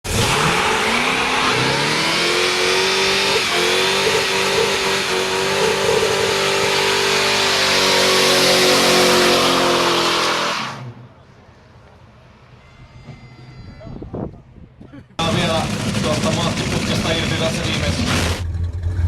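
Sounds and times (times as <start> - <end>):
car engine revving: 0.0 - 11.0, 15.2 - 19.0
spinning tyres hissing: 0.1 - 11.0.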